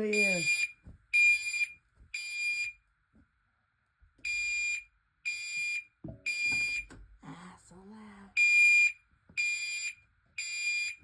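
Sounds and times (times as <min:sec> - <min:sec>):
fire alarm beeping: 0:00.0 - 0:02.8, 0:04.2 - 0:06.9, 0:08.4 - 0:11.0.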